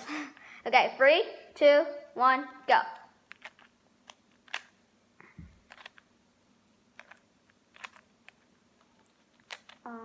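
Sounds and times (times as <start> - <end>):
puzzle cube clicks: 2.6 - 4.8, 5.6 - 6.1, 6.9 - 9.9.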